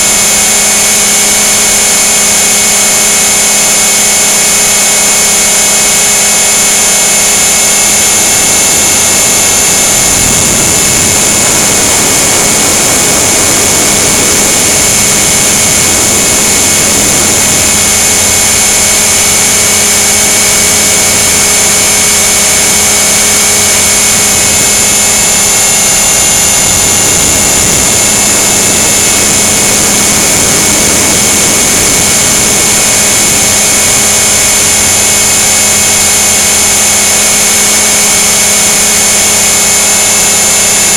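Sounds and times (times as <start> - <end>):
helicopter motor whine: 0.0 - 40.9
rotor and wind noise: 0.0 - 40.9.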